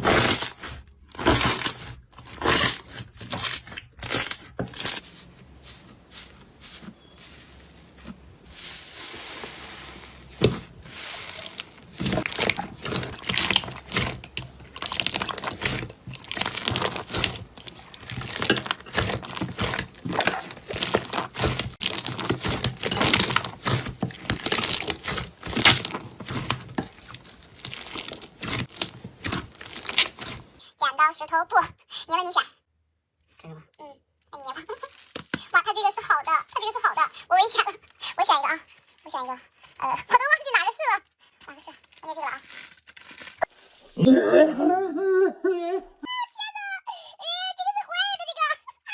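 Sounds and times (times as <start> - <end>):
material crunching and crackling by hand: 0.0 - 30.6, 41.4 - 44.0.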